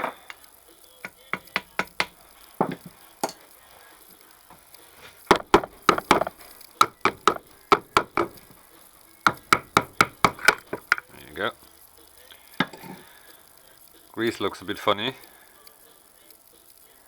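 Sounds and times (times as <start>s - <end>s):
sharp knocks on motor part: 5.3s - 8.4s.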